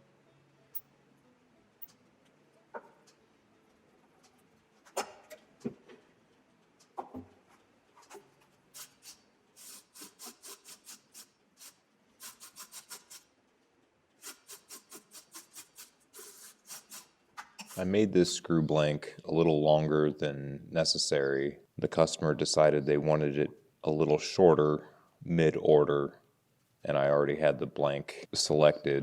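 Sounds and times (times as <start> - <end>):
hand tool scraping wood: 8.8 - 13.2, 14.2 - 17.9.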